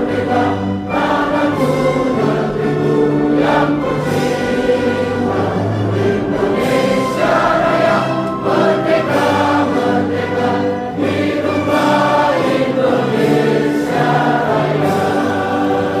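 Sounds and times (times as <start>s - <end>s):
choir singing held chords: 0.0s - 16.0s.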